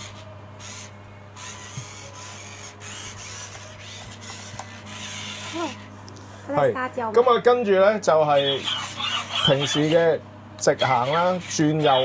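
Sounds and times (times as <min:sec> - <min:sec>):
servo motors whirring: 0:00.0 - 0:05.9, 0:08.4 - 0:10.2, 0:10.8 - 0:12.0.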